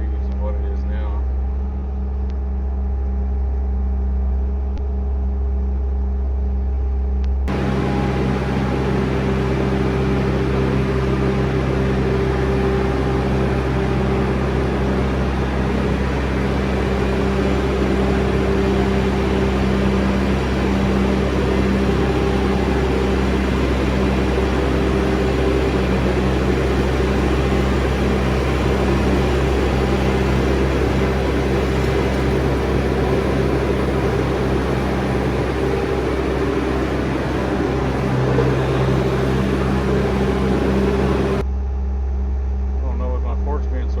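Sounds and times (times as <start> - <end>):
diesel engine running under load: 7.5 - 41.4.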